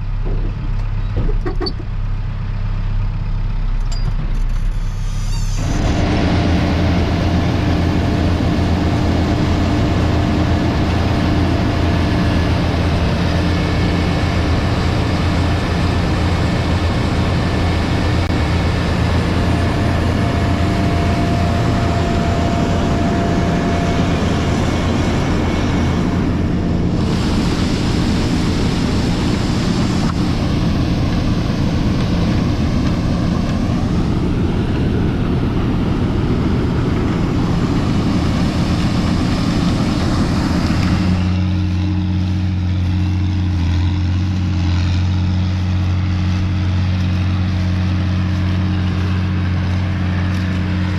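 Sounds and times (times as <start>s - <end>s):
large diesel engine droning: 0.0s - 50.9s.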